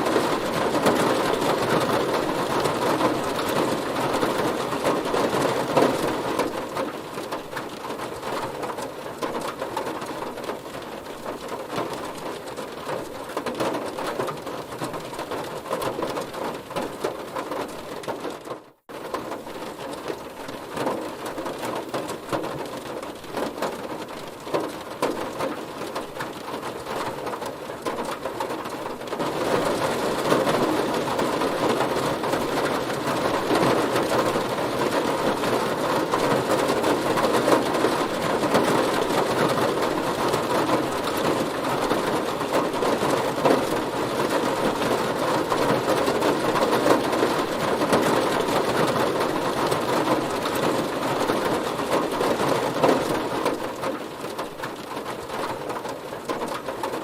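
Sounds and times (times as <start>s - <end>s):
heavy rain on a car: 0.0s - 57.0s.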